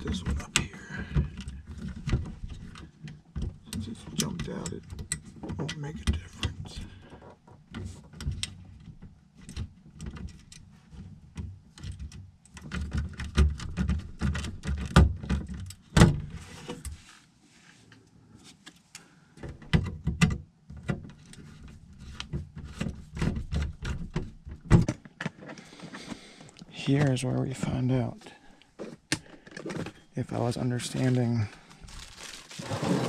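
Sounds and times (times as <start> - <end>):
clicks and knocks of handled wiring: 0.0 - 17.0, 18.6 - 27.3.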